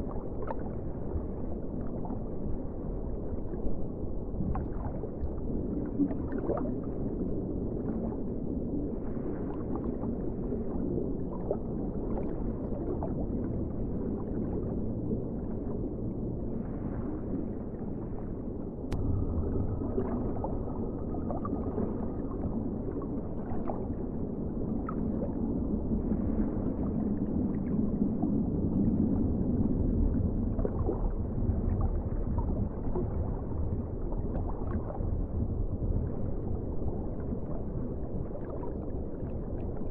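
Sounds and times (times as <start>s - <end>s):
underwater rumble: 0.0s - 39.9s
faint high tone: 19.0s - 22.2s.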